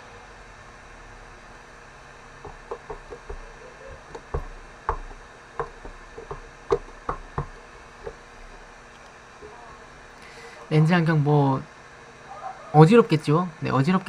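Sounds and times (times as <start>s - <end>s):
faint steady hum: 0.0s - 14.0s
irregular light taps: 2.4s - 9.2s.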